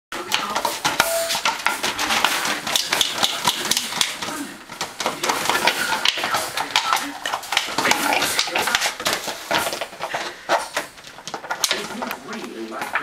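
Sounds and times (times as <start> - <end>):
puppy chewing plastic bottle: 0.2 - 13.0.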